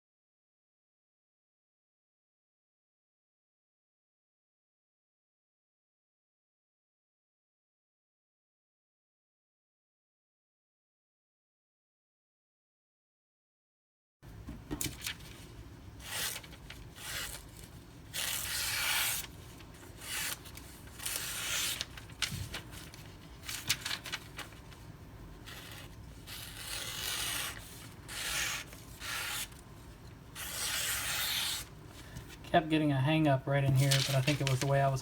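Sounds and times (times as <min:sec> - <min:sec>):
knife slicing paper: 0:15.0 - 0:29.6, 0:30.3 - 0:32.3, 0:33.7 - 0:34.8.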